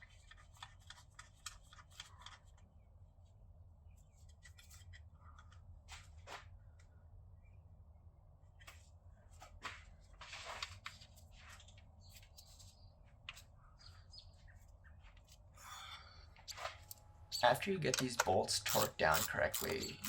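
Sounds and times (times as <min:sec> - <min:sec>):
low steady hum: 0:00.0 - 0:20.0
hand tools clicking on metal: 0:17.9 - 0:20.0.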